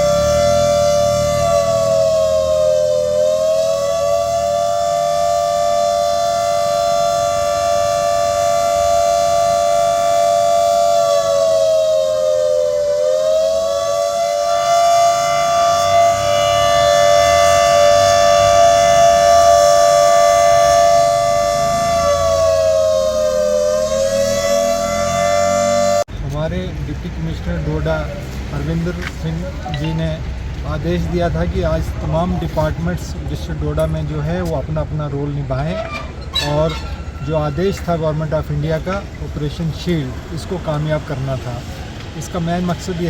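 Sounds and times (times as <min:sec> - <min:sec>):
civil defence siren wailing: 0:00.0 - 0:26.1, 0:29.6 - 0:30.5.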